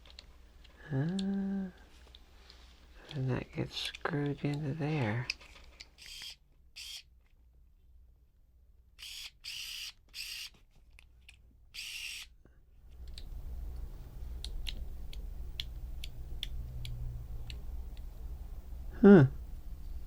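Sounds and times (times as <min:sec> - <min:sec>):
plastic parts scraping: 0:02.0 - 0:06.3
low background rumble: 0:12.8 - 0:20.0.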